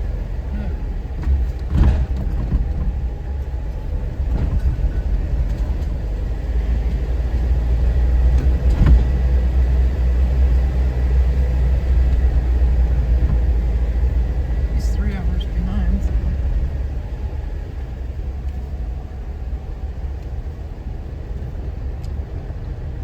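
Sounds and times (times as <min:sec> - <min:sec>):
vehicle engine and road noise: 0:00.0 - 0:23.0
knocks and rattles: 0:01.1 - 0:03.6.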